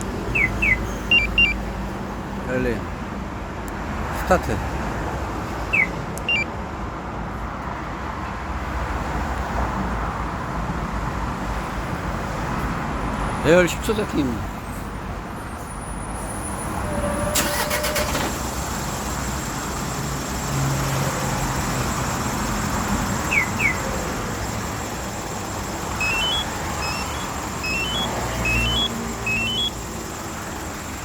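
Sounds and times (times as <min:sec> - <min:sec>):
diesel engine idling: 0:00.0 - 0:03.2, 0:17.1 - 0:31.0.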